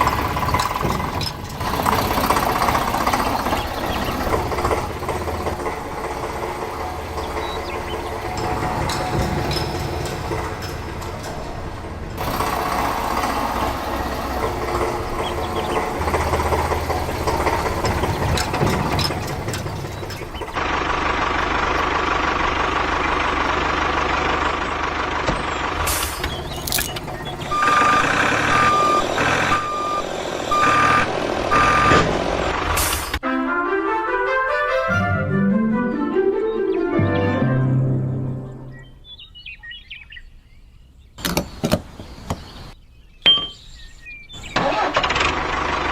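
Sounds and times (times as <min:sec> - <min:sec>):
toy truck motors running: 0:00.0 - 0:33.2
reversing beeps: 0:27.5 - 0:32.1
music: 0:33.2 - 0:39.0.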